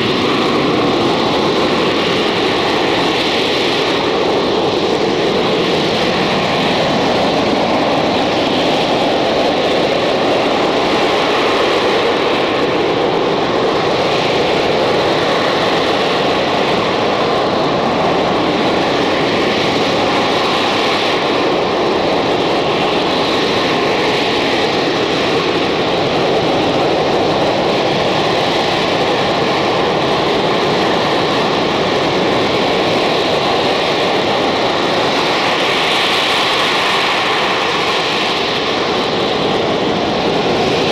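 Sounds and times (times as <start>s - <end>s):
jet engine roaring with whine: 0.0s - 40.9s.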